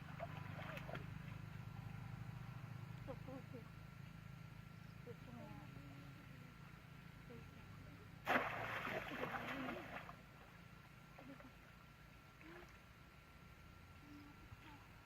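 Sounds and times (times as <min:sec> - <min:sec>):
water splashing: 0:08.2 - 0:10.3.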